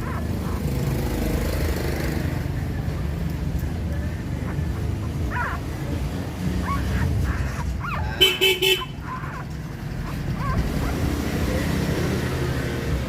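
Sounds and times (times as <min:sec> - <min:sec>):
low traffic rumble: 0:00.0 - 0:13.0
vehicle horn beeping: 0:08.2 - 0:09.0.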